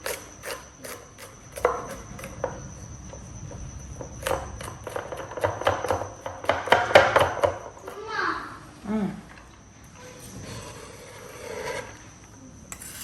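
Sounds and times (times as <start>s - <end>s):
faint high-pitched tone: 11.6s - 13.0s.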